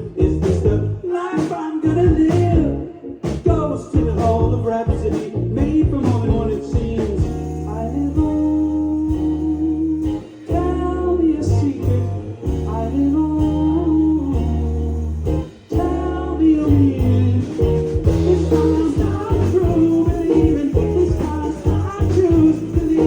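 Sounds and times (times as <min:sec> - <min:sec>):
drums hitting: 0:00.0 - 0:08.4, 0:16.7 - 0:23.0
live band playing: 0:00.0 - 0:23.0
person singing: 0:00.0 - 0:23.0.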